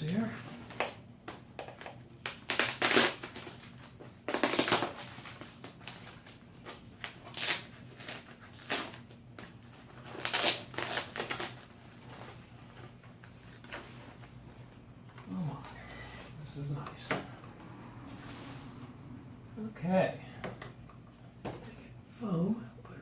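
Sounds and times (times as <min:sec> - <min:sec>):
packing material rustling: 0:02.2 - 0:14.5.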